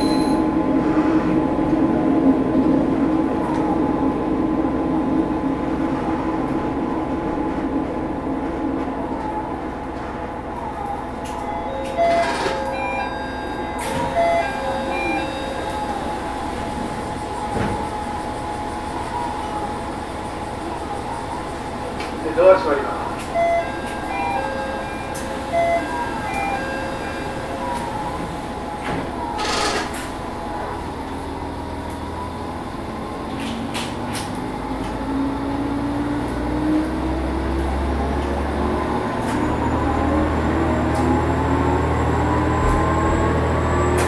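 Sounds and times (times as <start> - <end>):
short beeping tones: 0.0 - 0.4, 11.6 - 16.2, 23.3 - 28.1
diesel railcar engine accelerating: 0.0 - 44.0.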